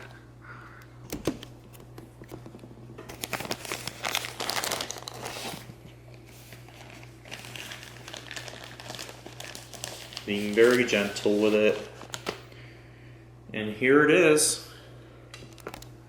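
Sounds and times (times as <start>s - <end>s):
packaging crinkling: 3.1s - 12.5s.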